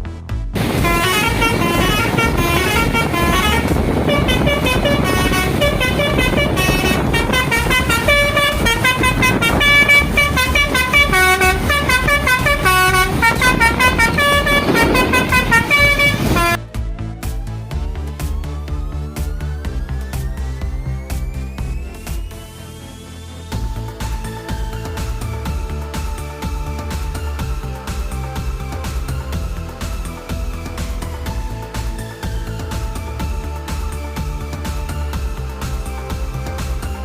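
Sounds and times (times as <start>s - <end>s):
musical air horn tune: 0.6s - 16.7s
rushing background noise: 0.6s - 37.0s.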